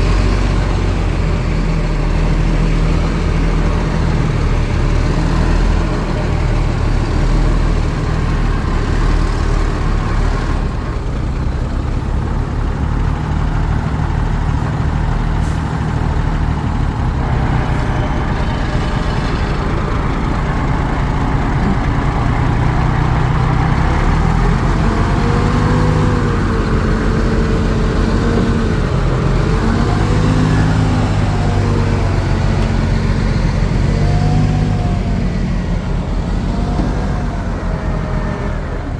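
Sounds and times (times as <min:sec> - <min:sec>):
heavy diesel engines running: 0:00.0 - 0:38.9.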